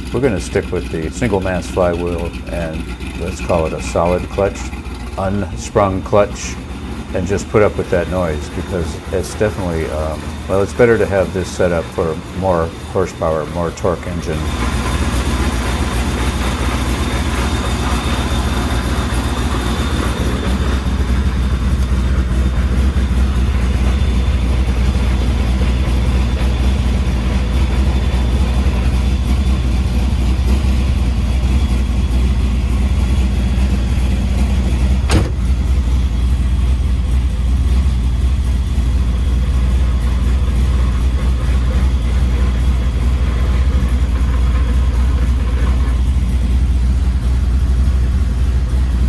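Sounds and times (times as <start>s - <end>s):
car engine idling: 0.0s - 49.0s
transmission gear rattle: 0.0s - 49.0s.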